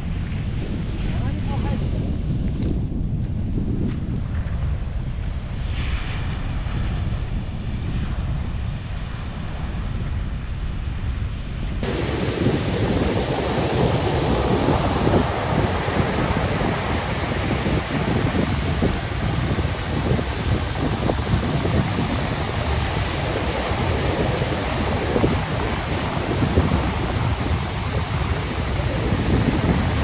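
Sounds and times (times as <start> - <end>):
wind buffeting microphone: 0.0 - 30.0
ocean surf: 11.8 - 30.0.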